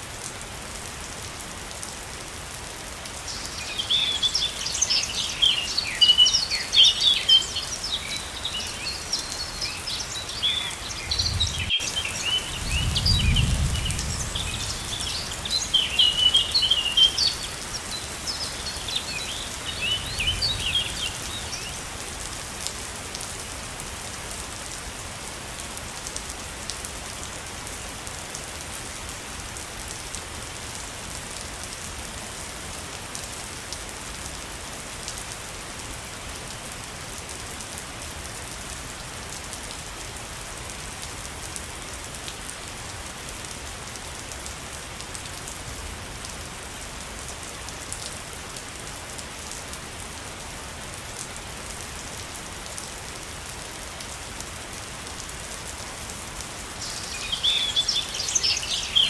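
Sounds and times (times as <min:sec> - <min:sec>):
waterfall rushing: 0:03.2 - 0:13.4, 0:14.2 - 0:21.9, 0:55.7 - 0:59.0.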